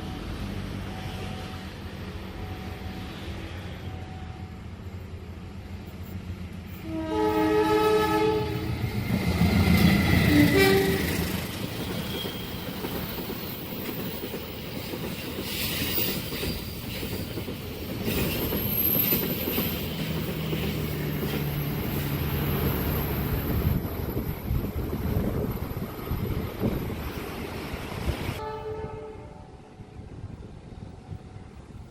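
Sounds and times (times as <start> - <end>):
train wheels on rail: 0.0 - 28.4
train air horn: 6.8 - 8.8, 10.2 - 11.4, 28.4 - 29.9.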